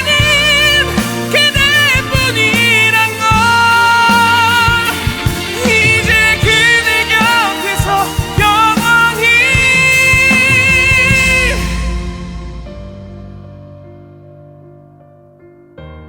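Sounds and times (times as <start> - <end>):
man singing pop ballad: 0.0 - 12.6
band backing track: 0.0 - 14.9.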